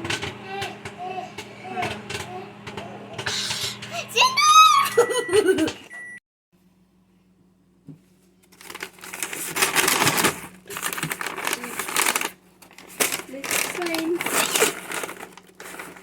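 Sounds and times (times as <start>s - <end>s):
paper bag crinkling: 8.4s - 16.0s.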